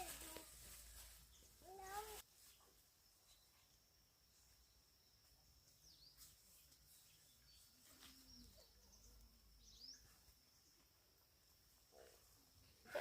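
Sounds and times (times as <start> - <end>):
faint bird chirps: 0.8 - 10.9.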